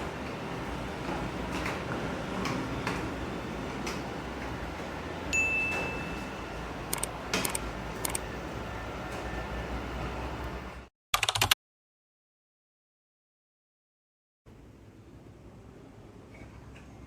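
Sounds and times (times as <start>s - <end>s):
sharp clicks: 6.9s - 8.2s, 11.2s - 11.6s.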